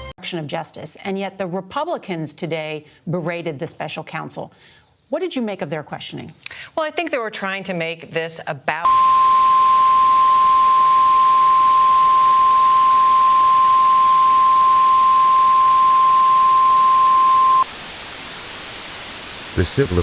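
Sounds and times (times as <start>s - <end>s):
steady hiss: 8.9s - 20.0s.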